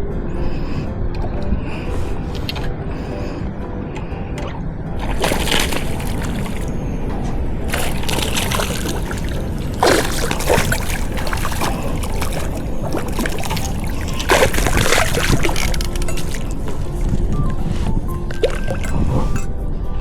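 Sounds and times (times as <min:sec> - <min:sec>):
water splashing and sloshing: 0:04.9 - 0:19.5.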